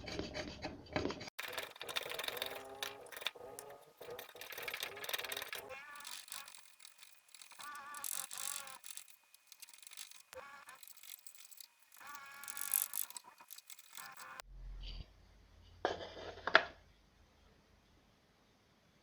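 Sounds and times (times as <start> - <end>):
hand tool scraping wood: 0.0 - 14.4.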